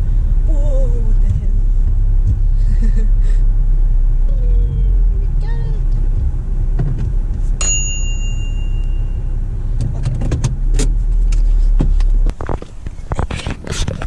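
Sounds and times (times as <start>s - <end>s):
farm vehicle engine rumbling: 0.0s - 14.0s
high tone: 7.6s - 9.4s.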